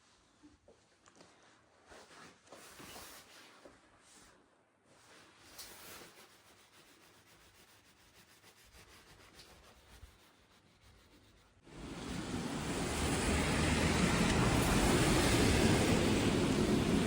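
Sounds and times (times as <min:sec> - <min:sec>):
loud rushing noise: 0:11.7 - 0:17.0.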